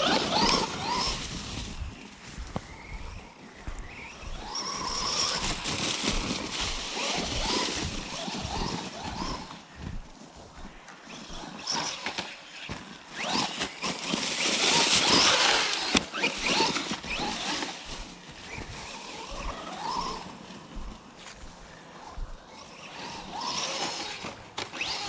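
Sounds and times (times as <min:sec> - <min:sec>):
tires scrabbling: 0:00.0 - 0:02.9, 0:04.0 - 0:09.8, 0:11.1 - 0:20.8, 0:22.5 - 0:25.0
rc car motor whine: 0:00.0 - 0:09.7, 0:11.0 - 0:20.8, 0:22.0 - 0:25.0.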